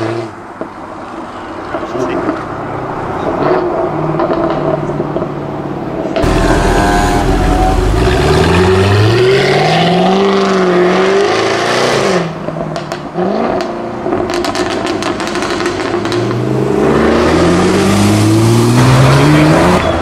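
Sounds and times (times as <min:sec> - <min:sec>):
car engine revving: 0:06.2 - 0:12.2, 0:14.5 - 0:19.9.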